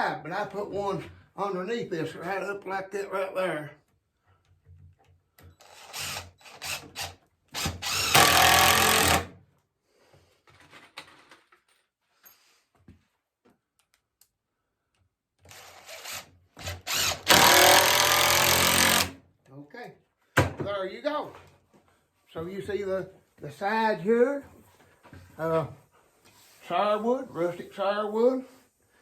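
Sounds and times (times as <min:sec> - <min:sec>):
power drill driving screw: 0:05.5 - 0:09.3, 0:15.4 - 0:19.2.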